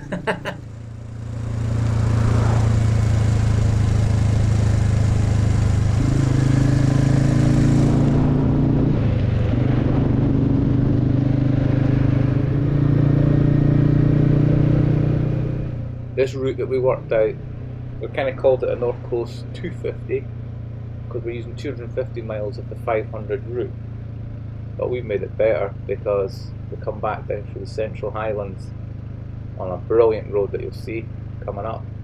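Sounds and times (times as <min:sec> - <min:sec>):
wind and road noise: 0:00.0 - 0:27.2, 0:27.9 - 0:32.0
motorcycle engine running: 0:00.0 - 0:32.0.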